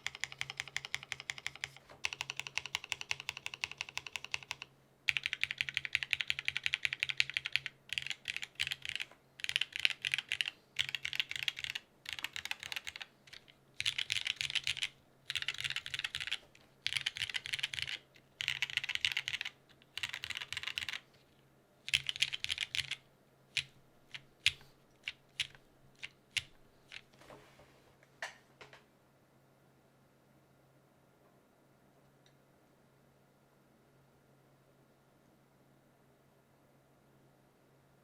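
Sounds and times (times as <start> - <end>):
mechanical keyboard typing: 0.0 - 21.0, 21.9 - 27.1.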